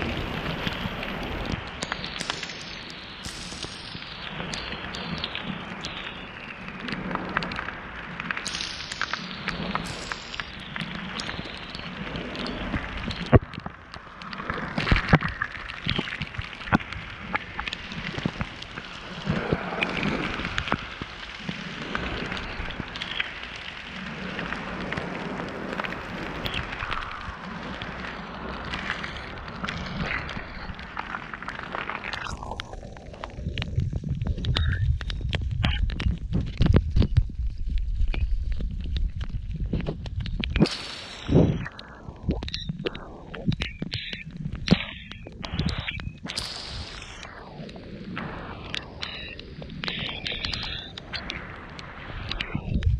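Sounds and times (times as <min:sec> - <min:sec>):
heavy rain splashing: 0:00.0 - 0:34.2
raindrops cracking near microphone: 0:00.0 - 0:52.9.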